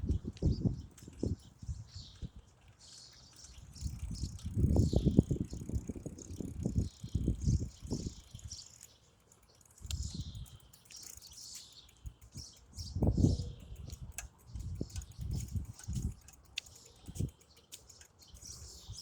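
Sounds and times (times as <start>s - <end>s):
wind buffeting microphone: 0.0s - 2.5s, 3.6s - 8.6s, 12.3s - 16.3s, 17.0s - 17.4s
small birds chirping: 0.0s - 19.0s.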